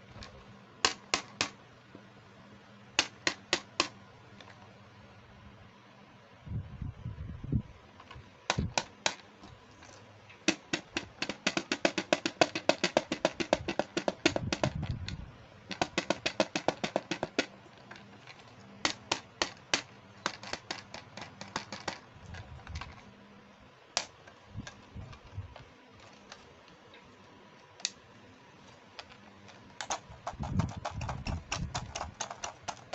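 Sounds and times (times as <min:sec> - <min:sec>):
plastic toy pieces clicking: 0:10.5 - 0:23.0, 0:28.9 - 0:32.9.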